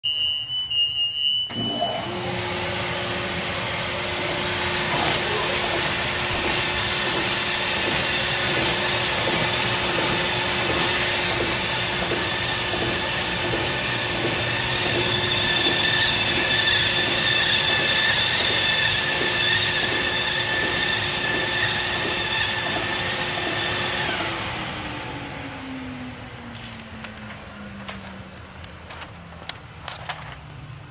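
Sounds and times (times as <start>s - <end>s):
paper folding machine humming: 1.5s - 24.7s.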